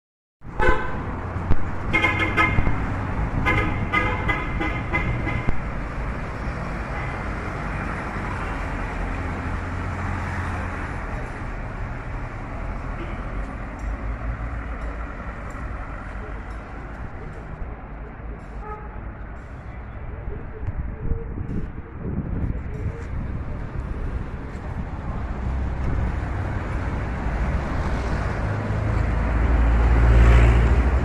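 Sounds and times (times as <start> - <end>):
road traffic noise: 0.4 - 31.0
vehicle horn toots: 0.6 - 1.0, 1.9 - 2.7, 3.4 - 5.5.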